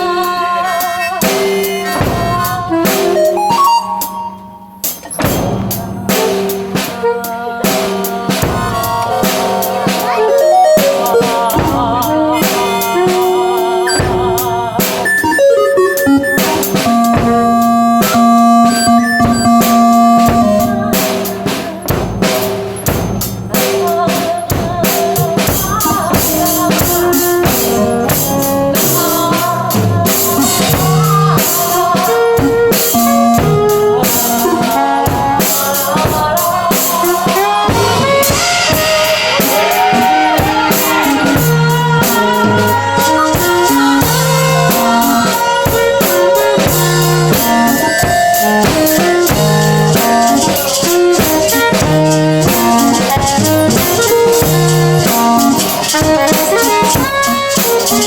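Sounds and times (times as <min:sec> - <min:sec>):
drum kit beat: 0:00.0 - 0:58.0
melodic instrument lines: 0:02.8 - 0:06.7, 0:08.9 - 0:12.4, 0:13.9 - 0:34.6.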